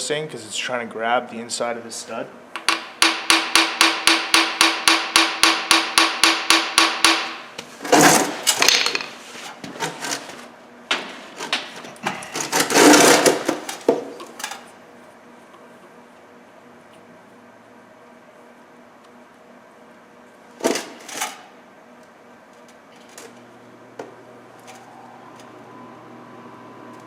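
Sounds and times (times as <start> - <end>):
hammer striking metal: 2.6 - 7.5.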